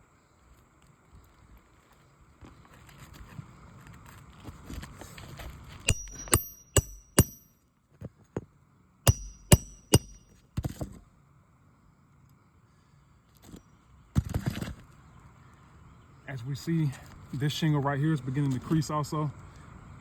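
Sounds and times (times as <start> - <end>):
hammer striking metal: 5.9 - 7.5, 9.1 - 10.2.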